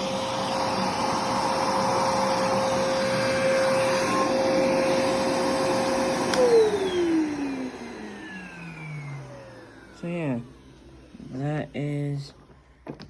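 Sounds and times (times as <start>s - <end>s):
vacuum cleaner motor whine: 0.0s - 13.0s
vacuum switch click: 6.2s - 6.6s.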